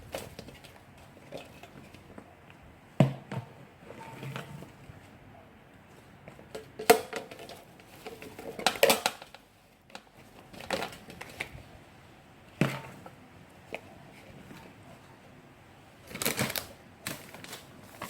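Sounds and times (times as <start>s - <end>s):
crinkly rustling: 16.0s - 18.0s.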